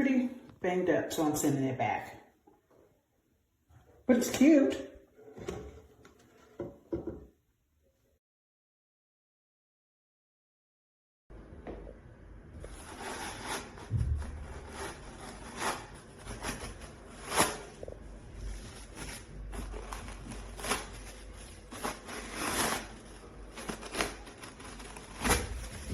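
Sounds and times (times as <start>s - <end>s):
objects being handled and set down: 5.2s - 7.4s
low rumble: 13.9s - 15.0s.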